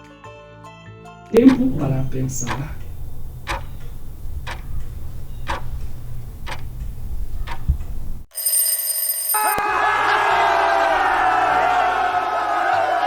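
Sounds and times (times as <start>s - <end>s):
clock ticking: 1.4s - 8.3s
low hum: 1.4s - 8.3s
high ring: 8.3s - 9.7s
crowd cheering and whooping: 9.6s - 13.0s.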